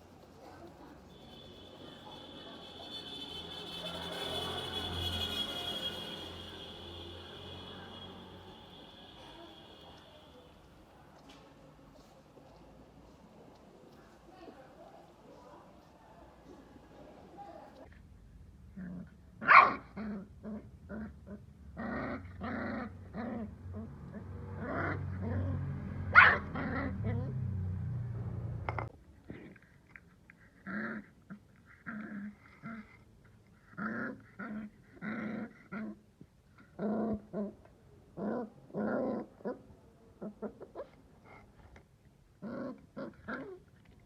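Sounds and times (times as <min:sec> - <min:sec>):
dog growling and barking: 0:18.7 - 0:27.6, 0:30.6 - 0:32.9, 0:33.6 - 0:36.0, 0:36.7 - 0:37.6, 0:38.2 - 0:39.6, 0:42.4 - 0:43.6.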